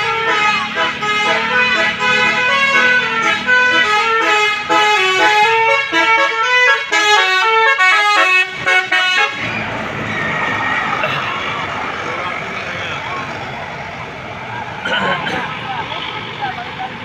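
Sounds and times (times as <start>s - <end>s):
multi-tone bus horn melody: 0.0s - 9.7s, 14.8s - 15.6s.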